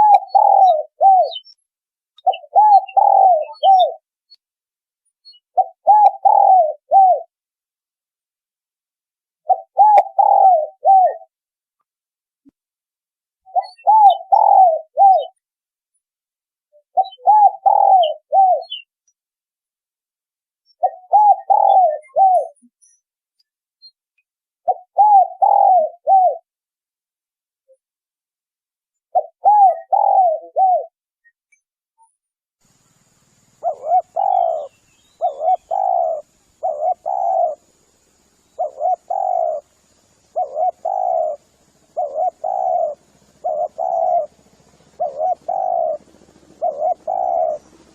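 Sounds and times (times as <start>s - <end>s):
dove cooing: 0.0s - 1.5s, 2.2s - 4.0s, 5.5s - 7.3s, 9.4s - 11.3s, 13.5s - 15.4s, 16.9s - 18.9s, 20.8s - 22.6s, 24.7s - 26.5s, 29.2s - 30.9s, 33.6s - 47.9s
faint high hiss: 32.6s - 46.8s.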